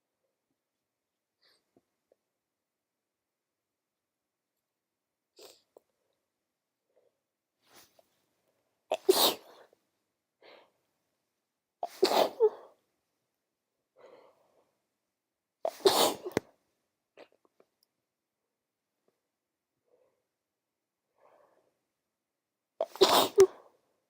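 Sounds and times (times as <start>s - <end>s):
woman sneezing: 8.9s - 9.6s, 11.8s - 12.7s, 15.7s - 16.4s, 22.8s - 23.6s.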